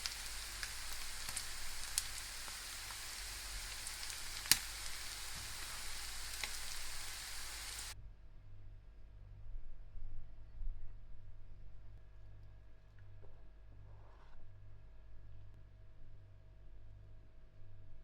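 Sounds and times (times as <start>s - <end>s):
crackling pops of oil: 0.0s - 7.8s
meat sizzling in a pan: 0.0s - 8.0s
faint low hum: 0.0s - 18.0s.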